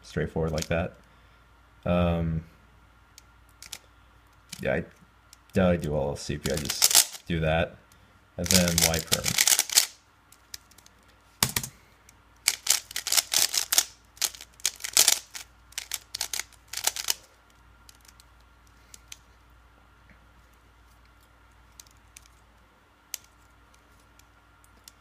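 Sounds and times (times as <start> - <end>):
puzzle cube plastic clacking: 0.5 - 0.8, 3.5 - 3.8, 6.4 - 7.3, 8.4 - 11.8, 12.4 - 17.3, 17.9 - 19.2.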